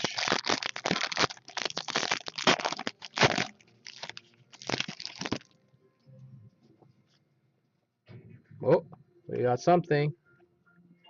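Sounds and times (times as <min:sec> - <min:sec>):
card pack wrapper tearing: 0:00.0 - 0:05.5.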